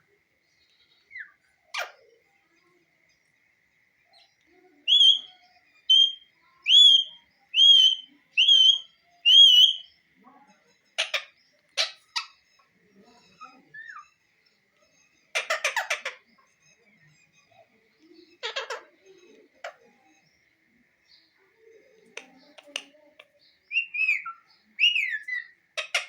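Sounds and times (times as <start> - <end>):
parrot harsh calls: 4.9 - 5.3, 5.9 - 9.9, 15.3 - 16.3, 23.7 - 26.0
parrot whistling: 4.9 - 9.9, 23.7 - 25.5.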